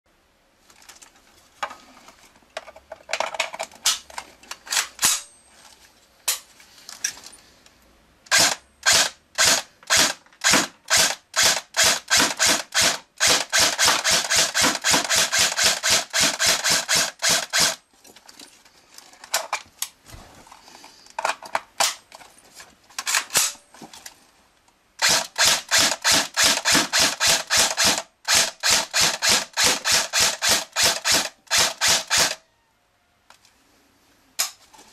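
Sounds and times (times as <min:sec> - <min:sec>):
airsoft rifle firing: 0:08.3 - 0:17.8, 0:25.0 - 0:32.4.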